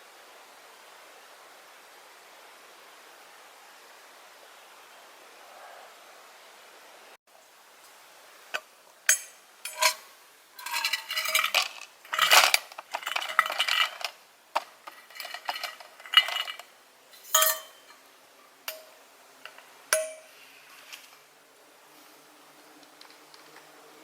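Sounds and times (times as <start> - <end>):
clattering and rustling: 9.1 - 18.0, 18.7 - 21.3
metal cookware clinking: 9.1 - 18.1, 18.7 - 20.4.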